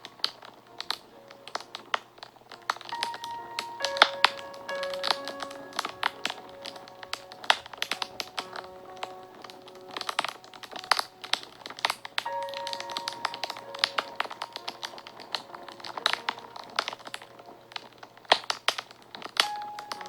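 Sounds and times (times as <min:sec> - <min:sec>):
fire crackling and popping: 0:00.0 - 0:20.0
soft background music: 0:00.0 - 0:20.0.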